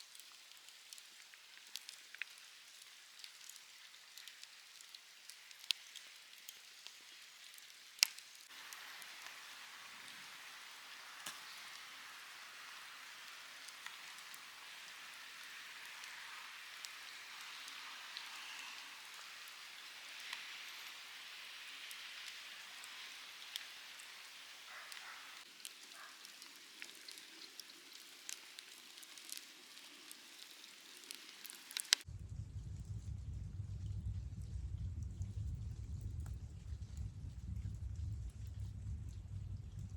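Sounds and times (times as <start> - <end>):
campfire crackling and popping: 0.0 - 32.1
falling rain hiss: 0.0 - 32.1
low hum: 32.1 - 39.9.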